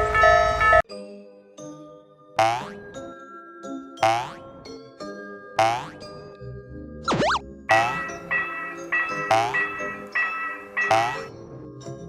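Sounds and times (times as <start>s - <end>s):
crossing warning bell ringing: 0.0s - 0.8s, 7.7s - 11.3s.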